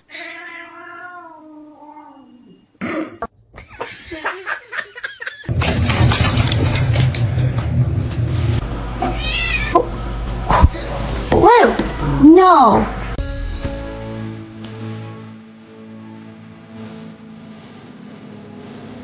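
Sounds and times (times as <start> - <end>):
cat meowing: 0.0 - 2.7, 9.0 - 9.9.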